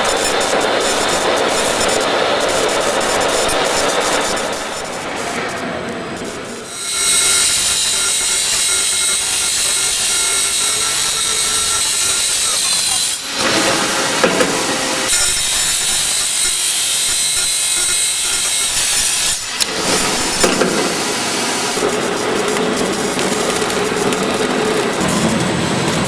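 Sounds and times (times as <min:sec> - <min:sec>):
machine low hum: 0:00.0 - 0:26.0
machine metal-grinding hiss: 0:00.0 - 0:26.0.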